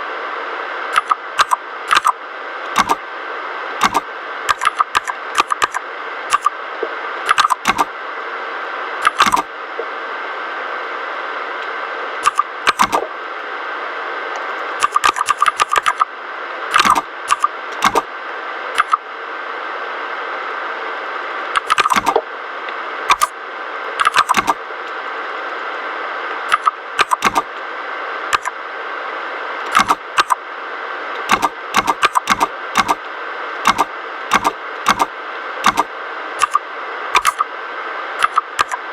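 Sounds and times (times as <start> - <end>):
mechanical keyboard keystrokes: 1.0 - 2.1, 2.7 - 3.0, 3.8 - 6.5, 7.3 - 7.9, 9.0 - 9.5, 12.2 - 13.1, 14.8 - 16.0, 16.7 - 18.0, 18.8 - 19.0, 21.6 - 22.2, 24.0 - 24.6, 26.5 - 27.4, 29.7 - 30.4, 31.3 - 33.0, 33.7 - 36.6, 37.2 - 37.4, 38.2 - 38.8.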